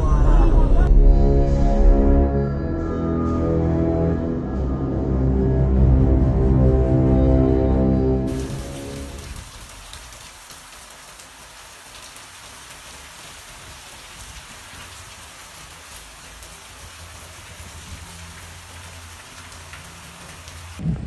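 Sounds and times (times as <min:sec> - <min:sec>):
heavy rain hissing: 0:08.3 - 0:20.8
raindrops ticking close by: 0:08.3 - 0:20.8.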